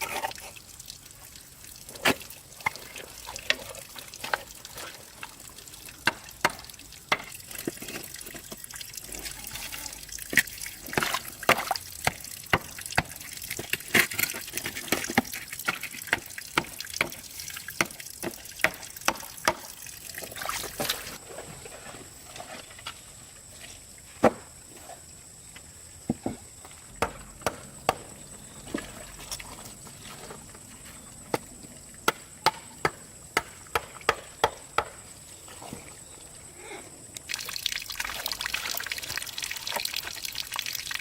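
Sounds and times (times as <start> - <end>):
water dripping: 0.0 - 21.2, 37.2 - 41.0.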